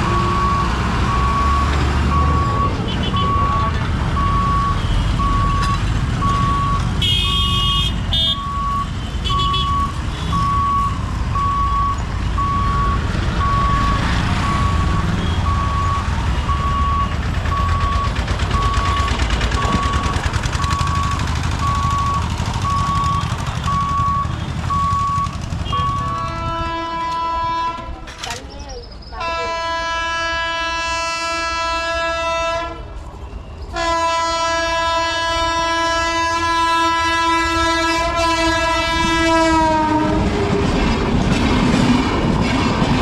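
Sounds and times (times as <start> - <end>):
low rumble of vehicles: 0.0 - 43.0
locomotive multi-tone horn: 2.7 - 3.9, 7.0 - 10.4, 25.6 - 28.3, 29.1 - 33.0, 33.7 - 40.6
vehicle horn toots: 2.9 - 3.4, 7.0 - 8.5, 9.2 - 10.3, 25.6 - 28.0, 29.2 - 32.8, 33.8 - 40.2.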